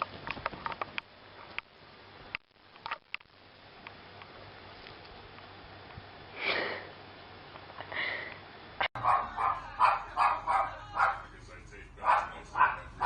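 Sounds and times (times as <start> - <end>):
dog barking quickly: 9.0 - 11.3, 12.0 - 13.0
dog calling: 9.0 - 11.3, 12.0 - 13.0.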